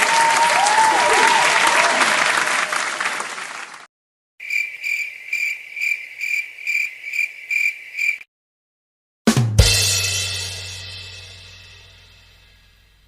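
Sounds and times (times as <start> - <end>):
applause: 0.0 - 3.9
cricket chirping: 4.4 - 8.3.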